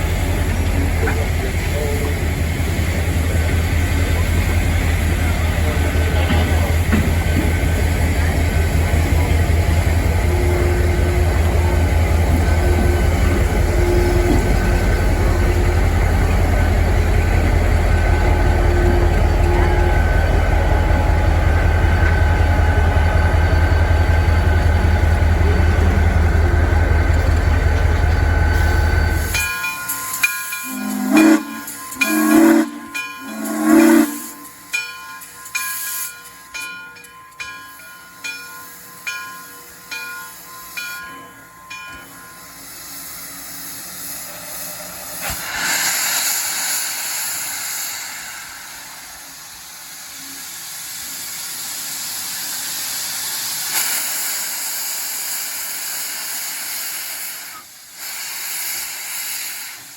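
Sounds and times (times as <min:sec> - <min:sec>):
locomotive bell ringing: 0:00.0 - 0:43.3
steam hissing: 0:00.0 - 0:59.9
steam locomotive whistle blasts: 0:09.8 - 0:21.1, 0:28.2 - 0:34.7.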